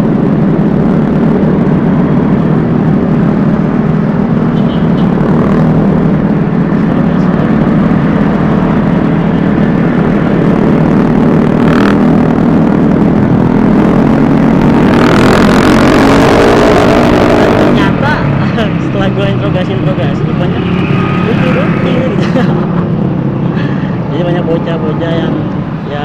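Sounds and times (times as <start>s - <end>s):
scooter engine running: 0.0s - 15.8s.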